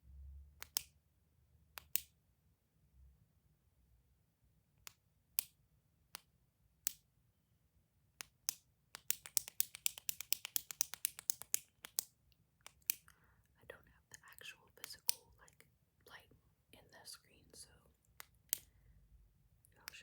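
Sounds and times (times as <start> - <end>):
clicky toy clicking: 8.2 - 13.1.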